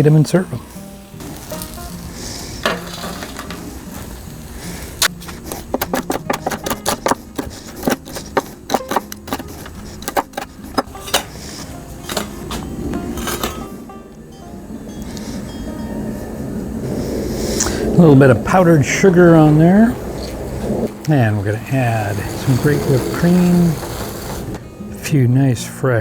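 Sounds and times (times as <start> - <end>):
metal utensils clinking: 0.0 - 13.9.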